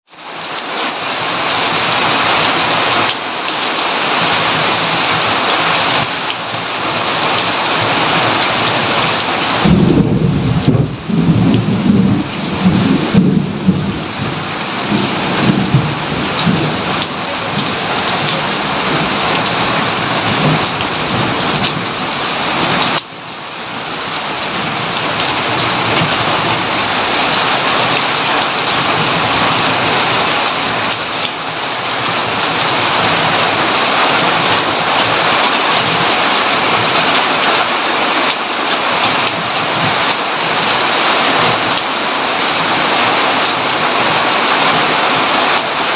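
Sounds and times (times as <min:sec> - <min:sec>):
heavy rain hissing: 0:00.1 - 0:45.9
rolling thunder: 0:07.8 - 0:23.0.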